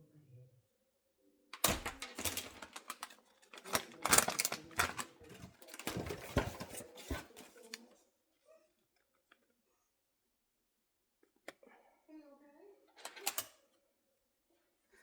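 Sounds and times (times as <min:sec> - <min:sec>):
packaging crackling and rustling: 0:01.6 - 0:07.8.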